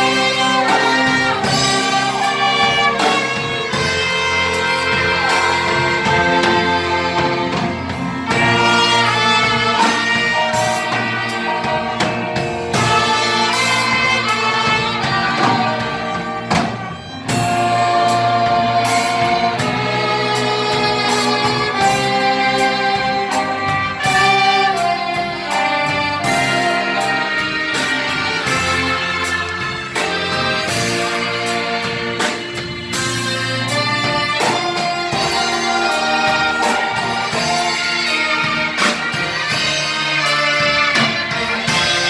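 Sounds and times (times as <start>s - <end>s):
strings and brass playing a hymn: 0.0s - 42.0s.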